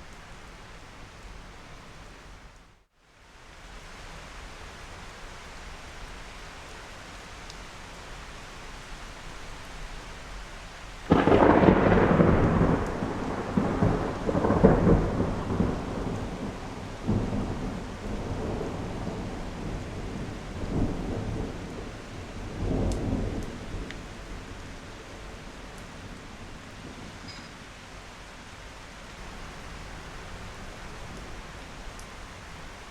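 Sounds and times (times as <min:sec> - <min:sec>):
steady rain: 0:00.0 - 0:32.9
thunder crack and rumble: 0:11.1 - 0:27.2.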